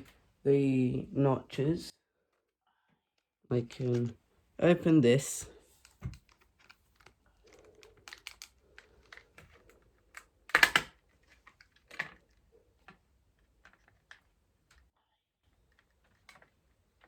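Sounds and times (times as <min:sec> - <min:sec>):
plastic clatter: 0:05.8 - 0:14.9, 0:15.6 - 0:17.0.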